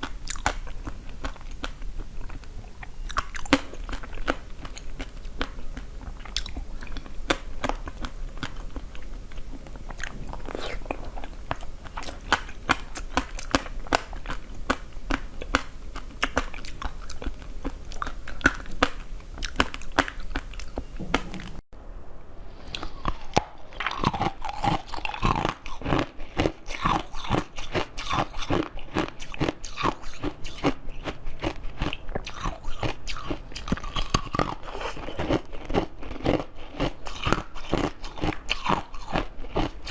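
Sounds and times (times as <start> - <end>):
person chewing crunchy food: 0.0 - 21.6, 22.7 - 39.9.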